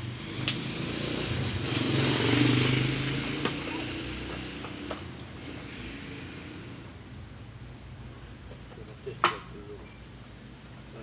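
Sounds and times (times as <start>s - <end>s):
motorcycle passing by: 0.0s - 7.1s.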